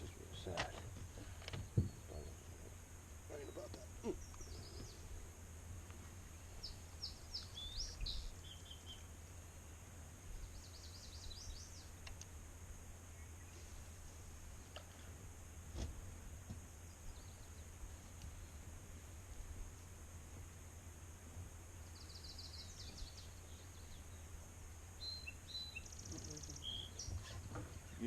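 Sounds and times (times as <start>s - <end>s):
low steady rumble: 0.0s - 28.0s
small bird chirping: 3.3s - 5.2s, 6.0s - 12.3s, 21.8s - 24.4s, 25.0s - 28.0s
faint clicks: 12.0s - 12.4s.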